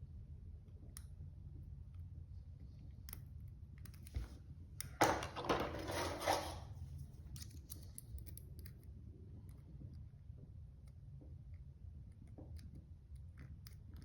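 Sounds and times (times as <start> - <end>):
scraping rustling handling noise: 5.1 - 7.2.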